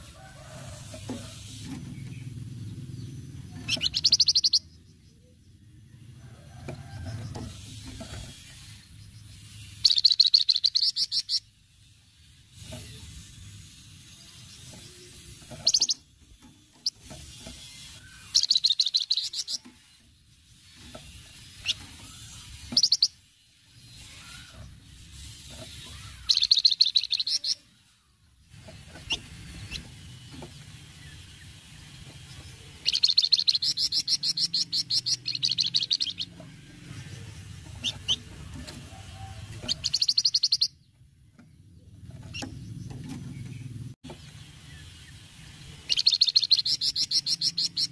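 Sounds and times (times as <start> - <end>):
songbird chattering trills: 2.2 - 5.4, 8.6 - 11.7, 12.9 - 16.1, 17.6 - 20.7, 21.4 - 24.5, 25.2 - 27.9, 29.0 - 38.5, 39.2 - 40.8, 44.5 - 47.9.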